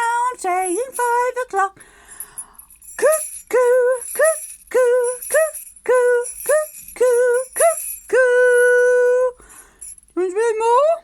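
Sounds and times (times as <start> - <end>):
jingle bells shaking: 0.0 - 10.5
woman singing cuckoo calls: 3.0 - 9.4.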